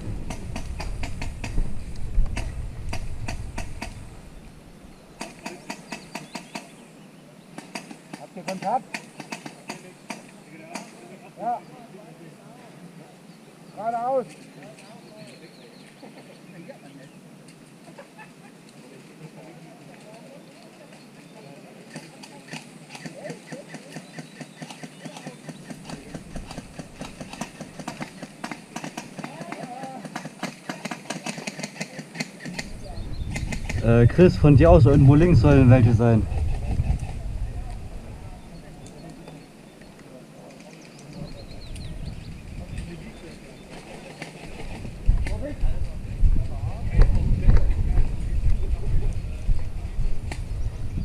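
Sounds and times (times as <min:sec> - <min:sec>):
low rumble: 0:00.0 - 0:04.8, 0:32.6 - 0:38.7
sharp irregular clicks and snaps: 0:21.9 - 0:32.7.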